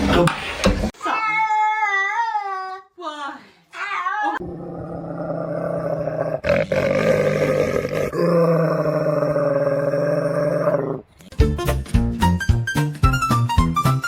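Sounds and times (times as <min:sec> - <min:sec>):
pet growling yowl: 0:04.4 - 0:11.2.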